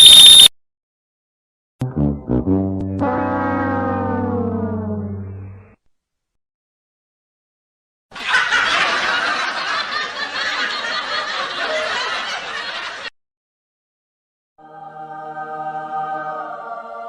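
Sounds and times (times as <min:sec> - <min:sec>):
crowd laughing: 0:08.1 - 0:13.1.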